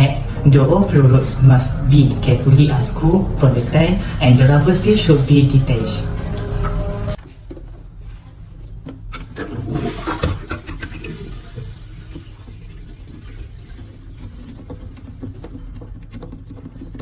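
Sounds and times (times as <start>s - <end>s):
water trickling in toilet cistern: 9.7s - 17.0s
fittings clicking and knocking: 13.8s - 17.0s.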